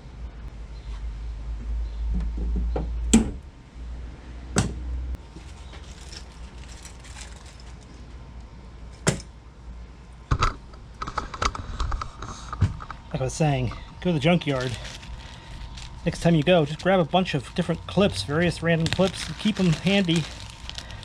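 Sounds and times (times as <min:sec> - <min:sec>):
sharp clicks and knocks: 0:10.3 - 0:13.0
low rumble: 0:12.0 - 0:21.0.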